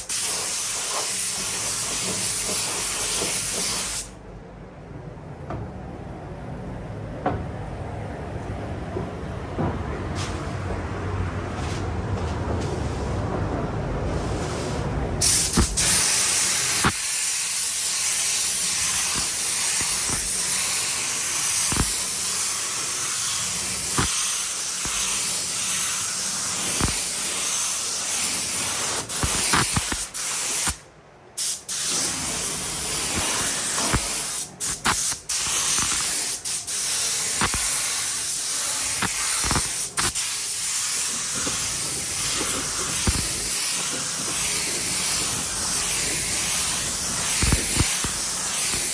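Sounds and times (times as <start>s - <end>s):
paint spray gun hissing: 0.0s - 4.1s, 15.2s - 30.8s, 31.4s - 48.9s.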